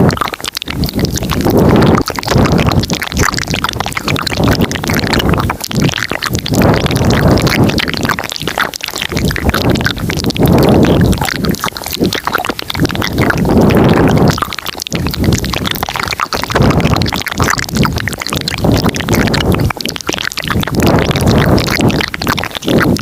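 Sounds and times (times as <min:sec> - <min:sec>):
mouth clicks and smacks: 0:00.0 - 0:23.0
breathy rumbling noise: 0:00.9 - 0:08.1, 0:09.1 - 0:12.2.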